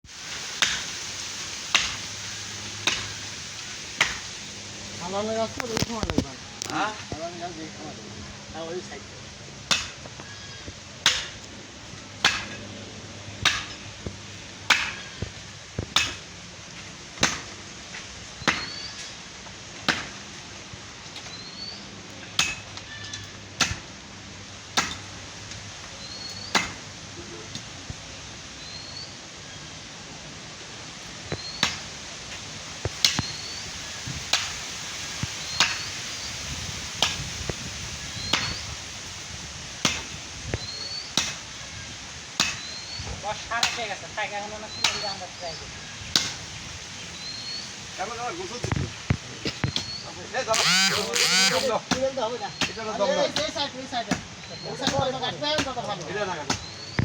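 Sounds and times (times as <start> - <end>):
blade chopping tree branch: 1.7 - 2.1, 2.8 - 3.2, 4.0 - 4.3, 9.6 - 10.1, 12.2 - 12.6, 13.4 - 13.9, 14.7 - 16.3, 17.2 - 17.6, 18.4 - 18.9, 19.8 - 20.2, 22.4 - 22.7, 23.6 - 23.9, 26.5 - 26.9, 42.4 - 42.8, 44.7 - 45.2.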